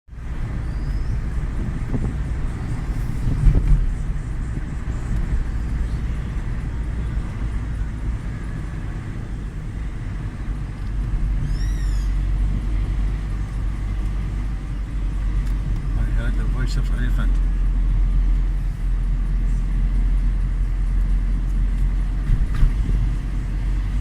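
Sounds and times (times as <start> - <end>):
road vehicle rumble: 0.1 - 24.0
high chirping call: 11.4 - 12.2.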